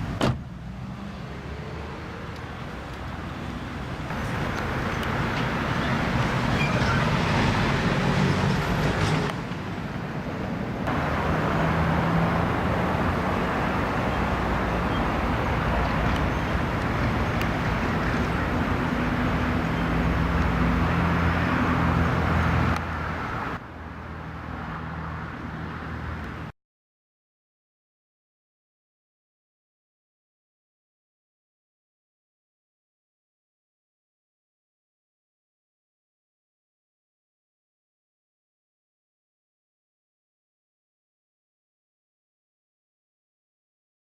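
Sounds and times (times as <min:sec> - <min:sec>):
low engine hum: 0:00.0 - 0:26.5
road traffic noise: 0:00.0 - 0:26.6.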